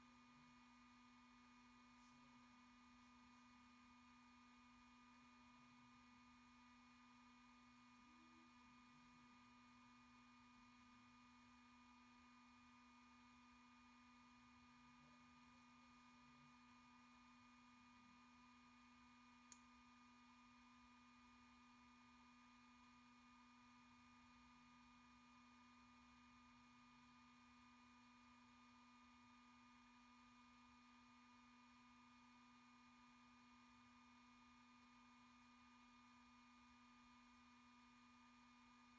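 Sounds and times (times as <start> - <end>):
faint tick: 19.5 - 19.7.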